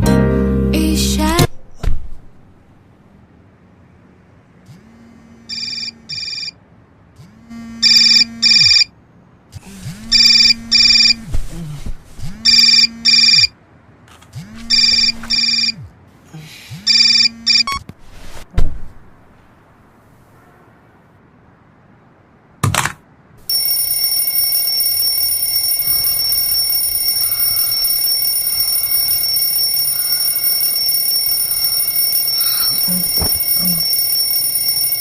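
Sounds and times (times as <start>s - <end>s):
electronic double ringtone: 5.5s - 6.6s, 23.5s - 35.0s.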